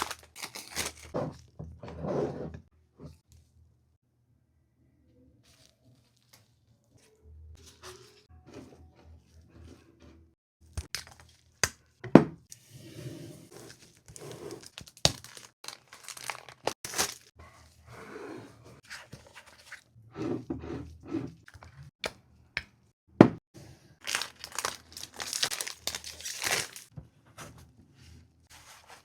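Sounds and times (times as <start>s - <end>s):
wrapping tearing and crinkling: 0.0s - 1.2s, 13.6s - 17.4s, 24.0s - 26.9s.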